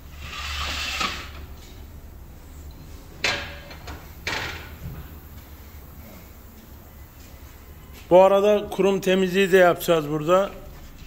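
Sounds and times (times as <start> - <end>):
metal scrape: 0.0 - 1.8.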